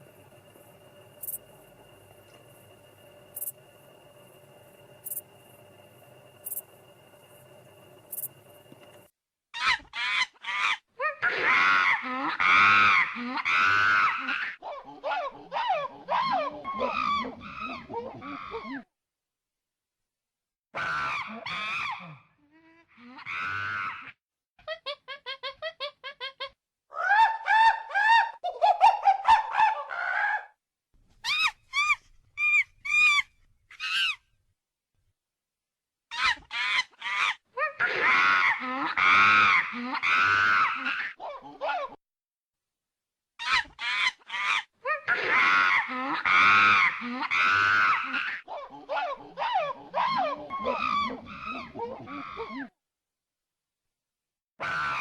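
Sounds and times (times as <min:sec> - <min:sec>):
faint steady hum: 0:00.0 - 0:09.1.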